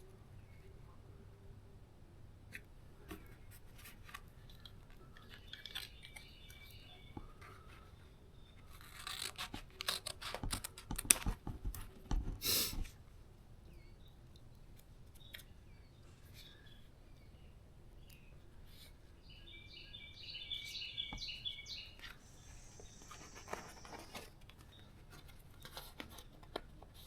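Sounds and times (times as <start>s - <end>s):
sharp snipping and crinkling: 2.5s - 6.8s, 8.6s - 12.4s.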